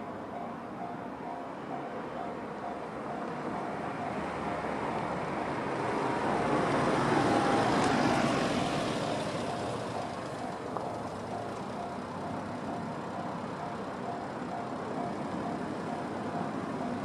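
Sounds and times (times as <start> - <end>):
passing vehicle rumble: 0.0 - 17.0
level-crossing alarm dinging: 8.5 - 17.0.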